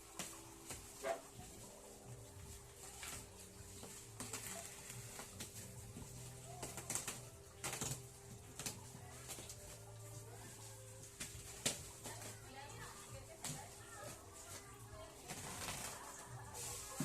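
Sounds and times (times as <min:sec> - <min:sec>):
parcel rustling and clicks: 0:00.0 - 0:17.0.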